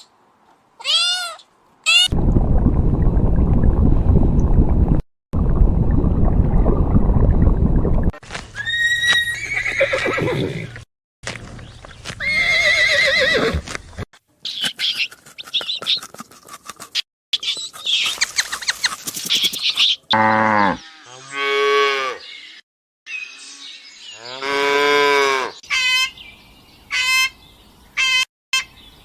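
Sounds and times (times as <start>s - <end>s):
loud low rumbling: 2.1s - 8.2s
horse whinnying: 8.6s - 10.8s, 12.2s - 13.6s.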